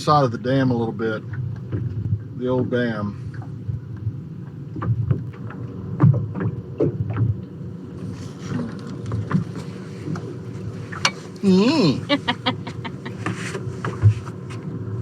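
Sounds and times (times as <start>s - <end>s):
boat engine hum: 0.0s - 15.0s.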